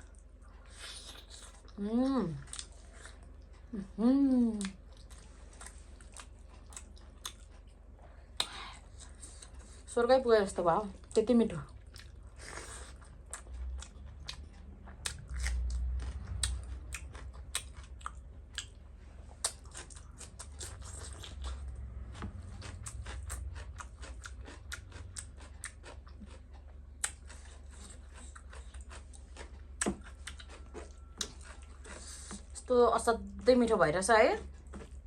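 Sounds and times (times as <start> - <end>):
chewing food: 0.0 - 35.0.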